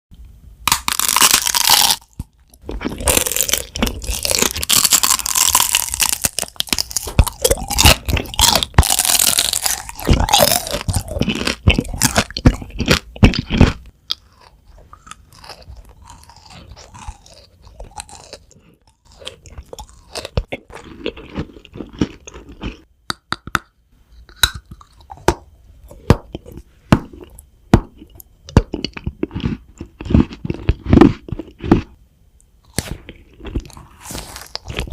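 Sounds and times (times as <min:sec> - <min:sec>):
crunchy food chewing: 0:00.7 - 0:22.9, 0:24.3 - 0:32.0, 0:32.6 - 0:34.9.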